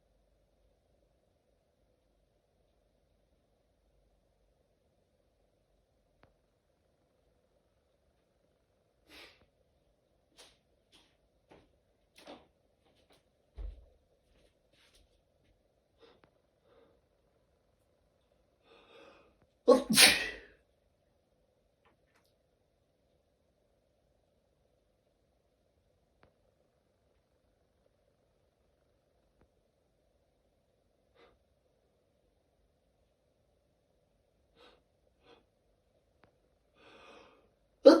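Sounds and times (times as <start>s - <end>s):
person sneezing loudly: 19.7s - 20.5s.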